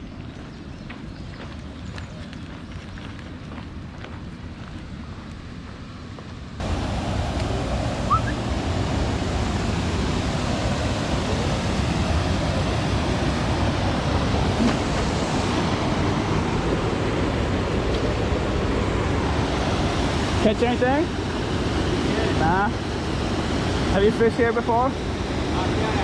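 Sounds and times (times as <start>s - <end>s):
river water rushing: 6.6s - 26.0s.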